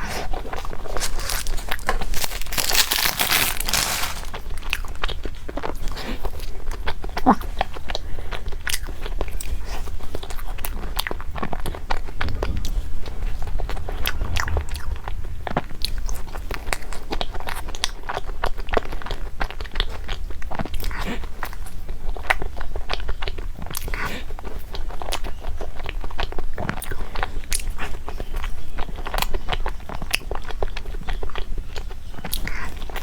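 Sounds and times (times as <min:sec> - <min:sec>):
crunching and chewing food: 0:00.0 - 0:12.5
low steady hum: 0:09.0 - 0:19.4.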